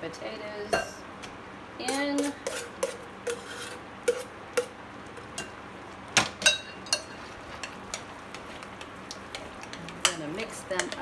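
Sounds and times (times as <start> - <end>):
utensil clinking against a bowl: 1.8 - 5.6, 6.4 - 11.0.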